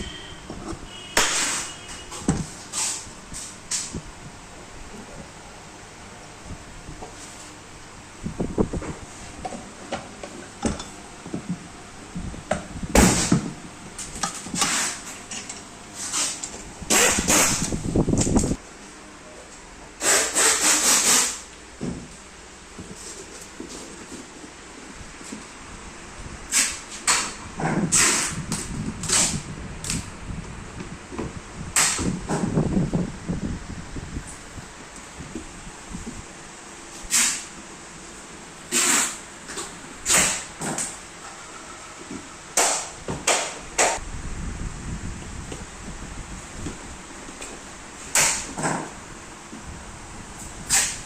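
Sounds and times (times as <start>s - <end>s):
parts knocking and clattering: 9.4s - 11.6s.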